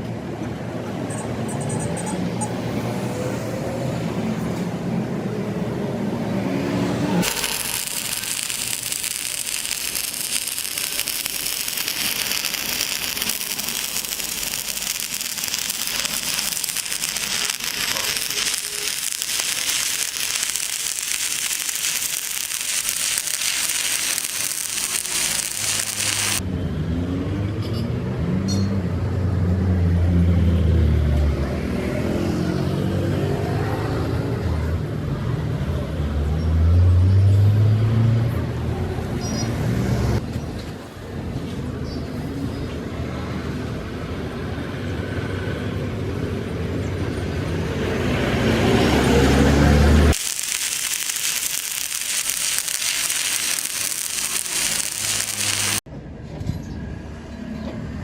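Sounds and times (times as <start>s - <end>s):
welding arc crackling hiss: 7.2s - 26.4s, 50.1s - 55.8s.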